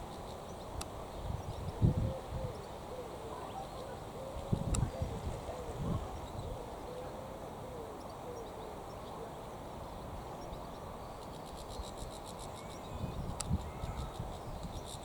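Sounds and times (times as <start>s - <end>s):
wind rumble on microphone: 0.6s - 2.7s, 4.3s - 7.3s, 9.8s - 15.0s.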